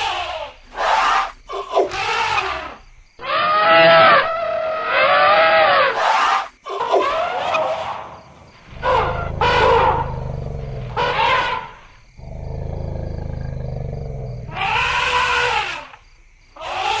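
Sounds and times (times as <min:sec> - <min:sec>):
elephants trumpeting: 0:03.2 - 0:16.0.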